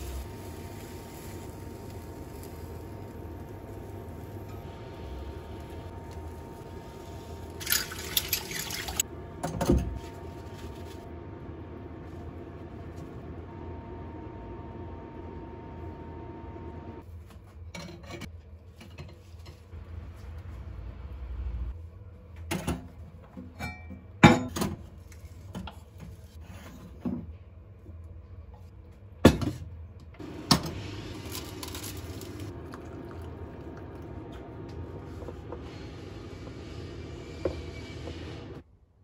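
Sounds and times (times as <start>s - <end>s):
kitchenware knocking and clinking: 23.4s - 24.8s.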